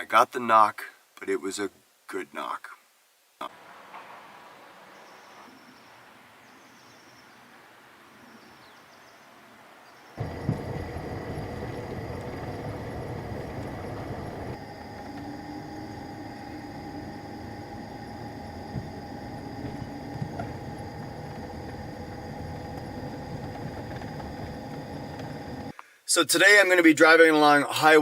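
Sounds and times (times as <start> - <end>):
road noise: 3.4 - 25.7
faint steady tones: 10.2 - 25.8.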